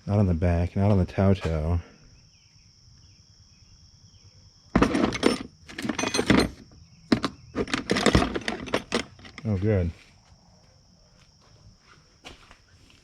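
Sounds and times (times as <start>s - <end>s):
insects droning: 0.0s - 13.0s
hand tools clattering: 4.8s - 9.6s.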